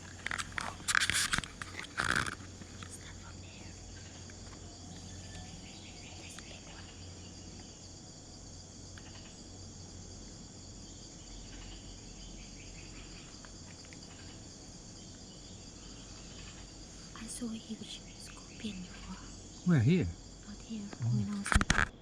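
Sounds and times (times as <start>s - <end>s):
forest insects buzzing: 0.0s - 22.0s
faint clicks: 6.2s - 7.0s, 13.4s - 14.4s.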